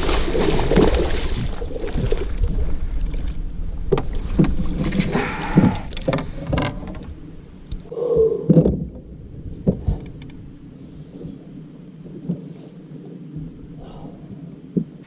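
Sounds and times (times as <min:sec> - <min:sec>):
knocks and clatter on boat: 0:00.0 - 0:07.8, 0:08.5 - 0:10.4
steady low rumble: 0:00.0 - 0:15.0.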